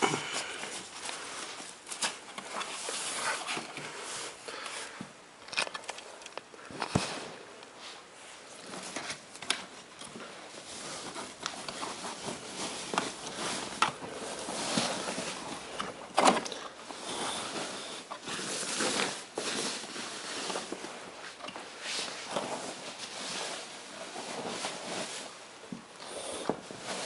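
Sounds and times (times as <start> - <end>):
packaging rustling: 8.5 - 25.3.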